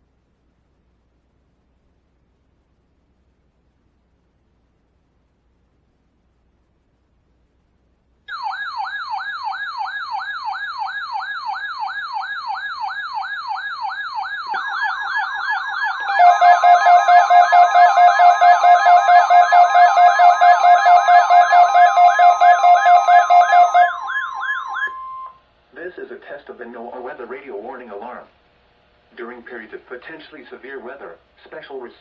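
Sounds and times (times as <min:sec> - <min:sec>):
siren-like tone sweeping downward: 0:08.3 - 0:25.4
steady alarm tones: 0:08.3 - 0:25.4.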